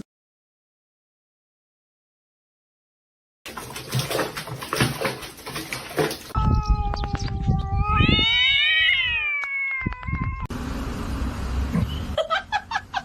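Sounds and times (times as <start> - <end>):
cat yowling: 6.4 - 10.5.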